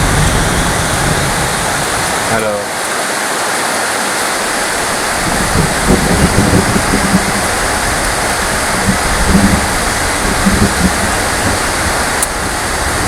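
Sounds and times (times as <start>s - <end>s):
low rumbling: 0.0s - 2.4s, 4.6s - 13.0s
heavy rain falling: 0.0s - 13.0s.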